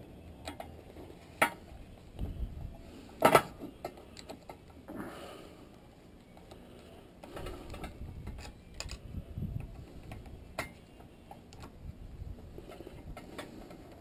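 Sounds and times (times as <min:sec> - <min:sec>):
clicks of small metal parts: 0:07.3 - 0:09.1.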